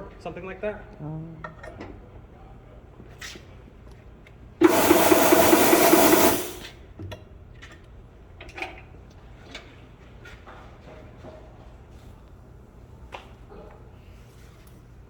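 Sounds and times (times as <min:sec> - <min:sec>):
pneumatic impact wrench: 0:04.6 - 0:06.7.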